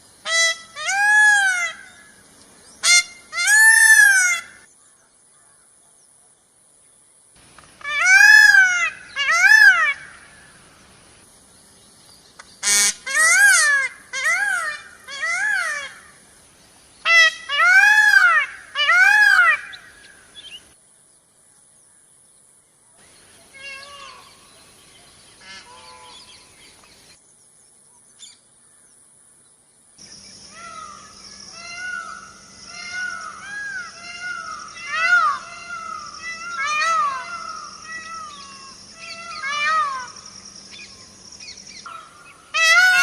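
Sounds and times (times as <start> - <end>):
steady hiss: 0.0 - 43.0
peafowl calling: 0.2 - 2.2, 2.8 - 4.7, 7.8 - 10.5, 12.6 - 16.2, 17.0 - 20.7, 25.4 - 26.5, 30.5 - 43.0.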